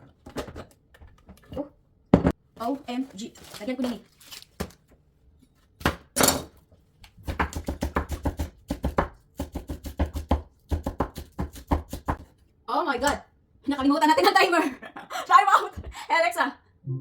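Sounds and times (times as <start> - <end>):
knife chopping on cutting board: 7.2 - 12.3.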